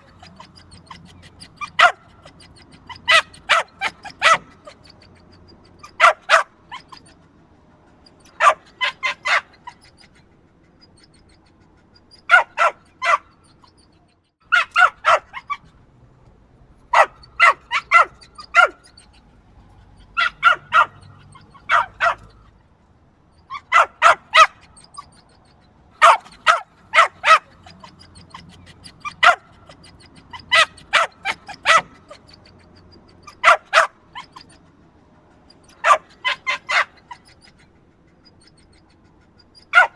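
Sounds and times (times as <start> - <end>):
small dog yapping: 0.0 - 7.3, 8.0 - 13.9, 14.5 - 15.8, 16.9 - 22.5, 23.5 - 34.8, 35.4 - 39.9.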